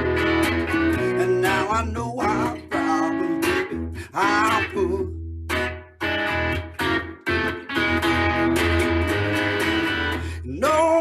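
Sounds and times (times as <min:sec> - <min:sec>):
bass line: 0:00.0 - 0:11.0
guitar strumming chords: 0:00.0 - 0:11.0
person singing: 0:00.6 - 0:05.3, 0:10.0 - 0:11.0.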